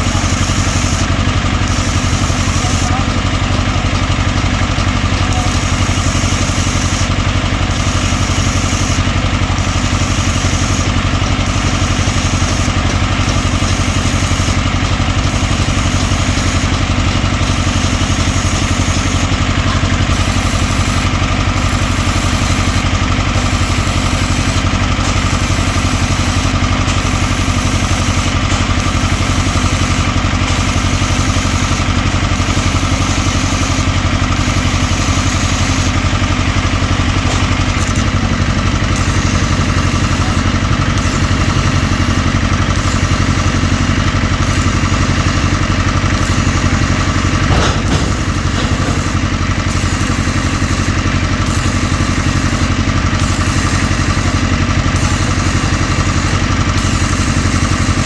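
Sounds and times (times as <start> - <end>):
engine running steadily: 0.0 - 58.0
brief knock: 47.5 - 49.2.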